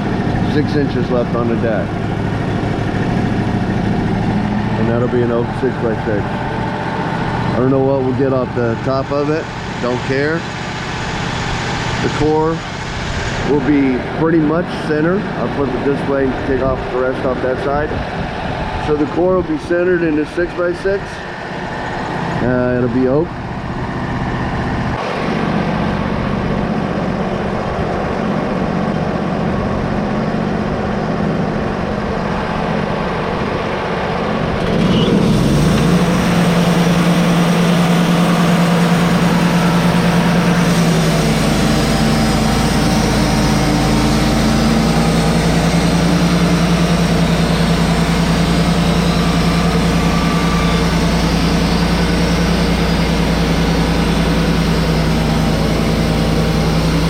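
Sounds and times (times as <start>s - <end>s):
sawmill engine humming: 0.0s - 57.0s
band saw cutting log: 2.7s - 17.8s, 34.6s - 57.0s.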